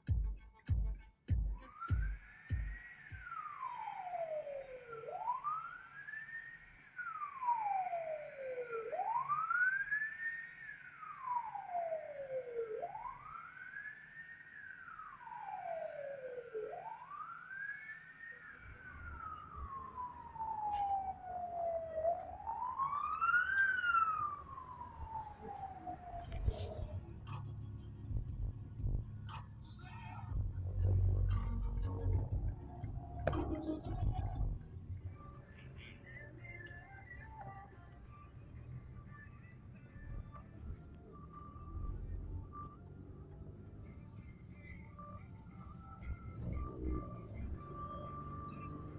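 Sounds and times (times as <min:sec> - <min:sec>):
emergency siren wailing: 0:00.0 - 0:48.9
low rumble: 0:26.1 - 0:35.2.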